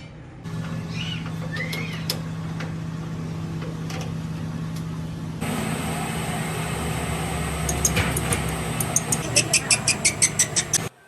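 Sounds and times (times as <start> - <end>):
lathe running: 5.4 - 10.9
high steady whine: 5.4 - 11.0.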